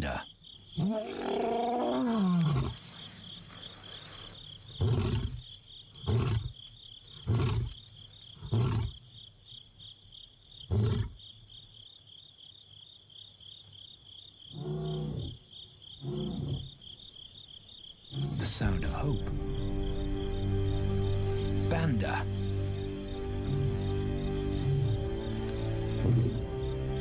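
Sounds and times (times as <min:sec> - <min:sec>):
insects trilling: 0:00.0 - 0:27.0
lion roaring: 0:00.8 - 0:02.8, 0:16.0 - 0:16.7, 0:18.1 - 0:18.5, 0:23.4 - 0:26.5.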